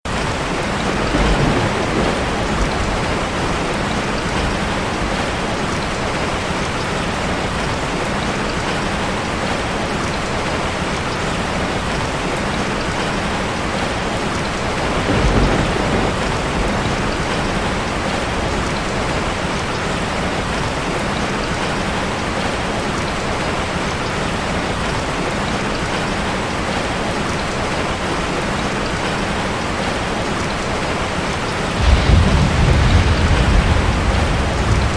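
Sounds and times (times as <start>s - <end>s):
heavy rain falling: 0.0s - 34.9s
low rumbles of thunder: 0.8s - 5.5s, 14.8s - 19.3s, 31.8s - 34.9s.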